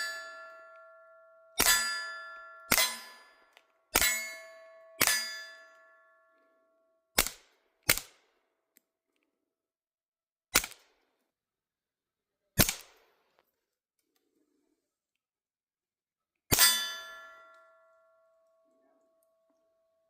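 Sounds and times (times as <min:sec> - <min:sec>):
metallic ring: 0:00.0 - 0:06.4, 0:16.5 - 0:18.3
suppressed gunshots: 0:07.2 - 0:08.3, 0:10.6 - 0:11.0.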